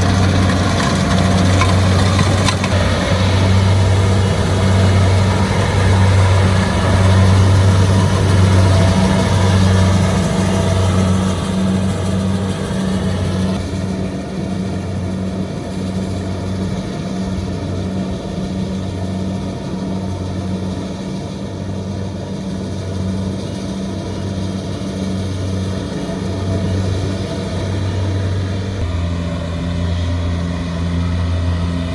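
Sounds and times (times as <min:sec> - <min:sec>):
combine harvester engine humming: 0:00.0 - 0:31.9.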